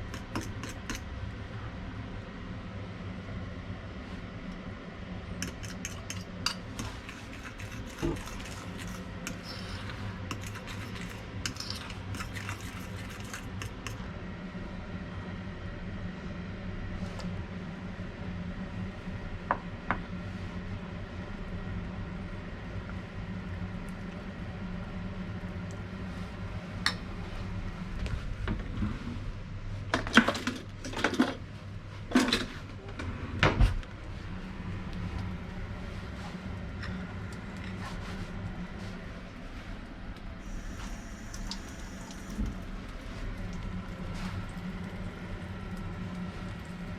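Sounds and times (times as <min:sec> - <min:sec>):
steady low hum: 0:00.0 - 0:46.9
kitchenware clinking and clattering: 0:30.0 - 0:31.4.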